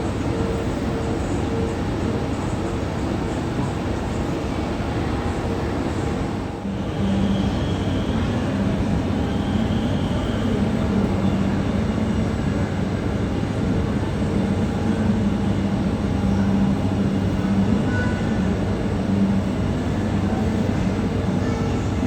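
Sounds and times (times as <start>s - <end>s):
jet engines droning: 0.0s - 22.0s.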